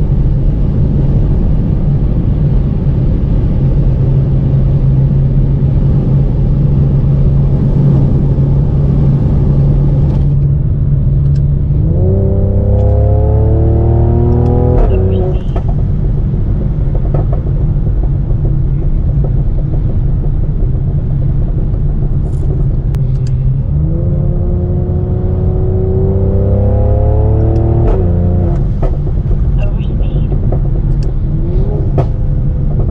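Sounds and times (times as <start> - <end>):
car exhaust droning and accelerating: 0.0 - 32.9
exhaust pops: 14.2 - 23.4.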